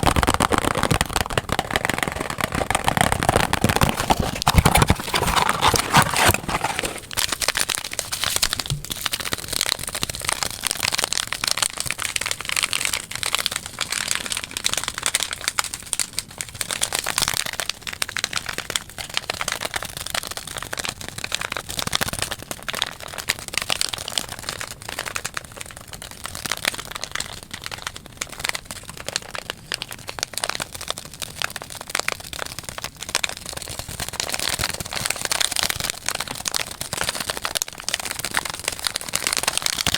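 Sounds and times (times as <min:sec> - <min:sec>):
fast asmr tapping and clicks: 0:00.0 - 0:09.6.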